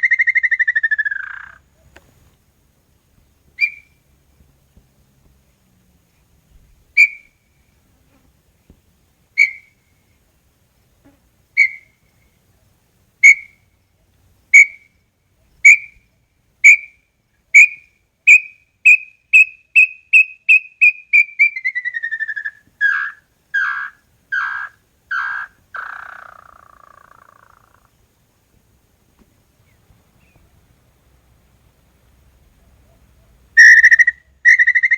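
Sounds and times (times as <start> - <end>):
bird whistling song: 0.0 - 1.6, 3.6 - 4.0, 7.0 - 7.4, 9.4 - 9.8, 11.6 - 12.0, 13.2 - 13.6, 14.6 - 14.9, 15.6 - 16.0, 17.6 - 27.9, 33.6 - 34.9.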